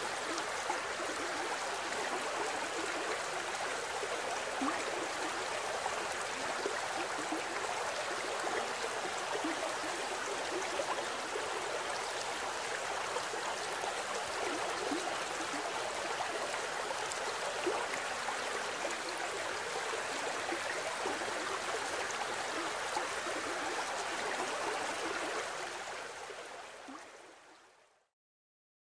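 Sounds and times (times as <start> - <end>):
stream running over rocks: 0.0 - 27.8.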